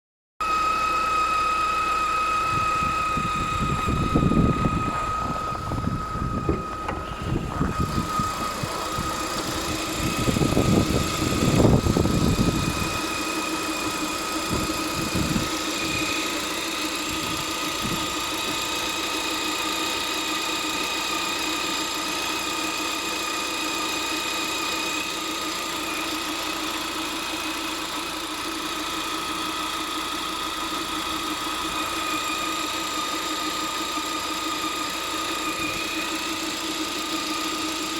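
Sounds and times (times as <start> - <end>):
high-pitched whistle: 0.4 - 21.6, 35.3 - 36.2
car engine idling: 0.8 - 37.9
low rumbles: 2.8 - 13.2.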